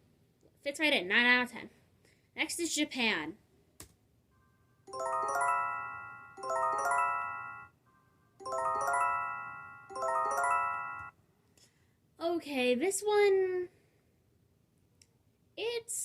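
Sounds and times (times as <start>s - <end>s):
bell-like warning chime arpeggios: 4.9s - 7.7s, 8.4s - 11.1s.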